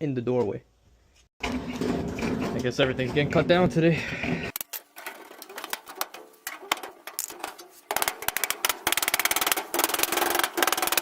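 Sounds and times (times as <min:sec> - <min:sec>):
sheet metal clicks and knocks: 0:04.6 - 0:11.0
power tool rapid clicking on metal: 0:07.9 - 0:11.0.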